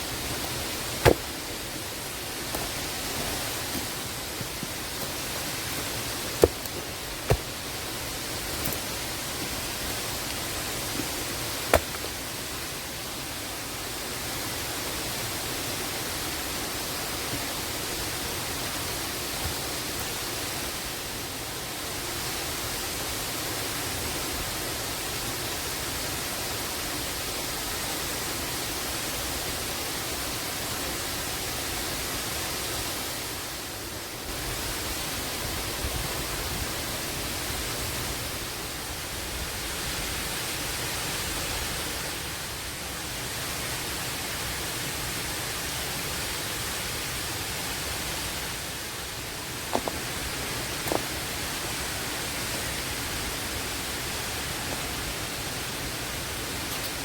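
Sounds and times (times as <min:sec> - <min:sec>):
waterfall rushing: 0:00.0 - 0:23.7
sharp knocks: 0:01.0 - 0:01.4.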